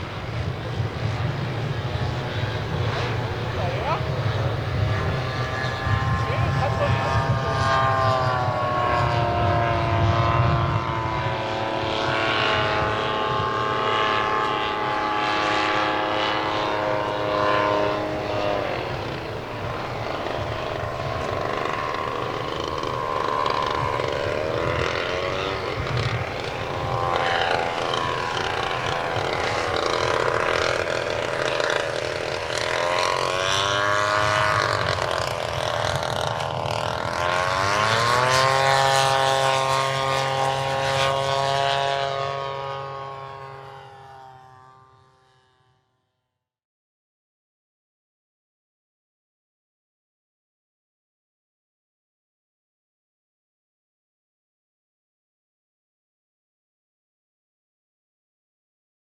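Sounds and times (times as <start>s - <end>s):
model airplane engine and propeller: 0.0s - 46.1s.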